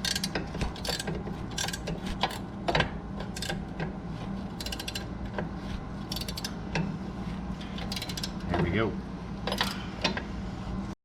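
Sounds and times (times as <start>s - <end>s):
ratchet wrench clicking: 0.0s - 1.9s, 4.6s - 5.1s, 6.1s - 6.5s, 7.8s - 8.4s.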